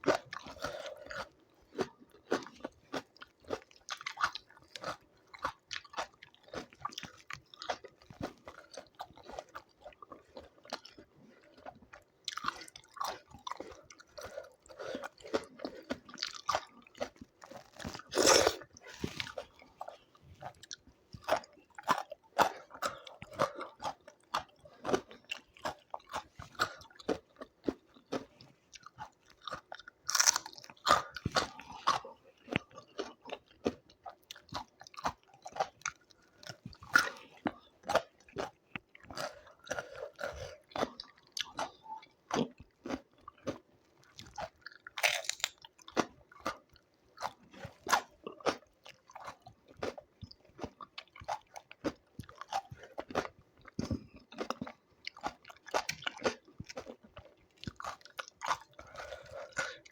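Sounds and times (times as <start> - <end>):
wet chewing and smacking: 0.0 - 59.9
crunchy bites: 20.7 - 43.6, 44.2 - 50.0.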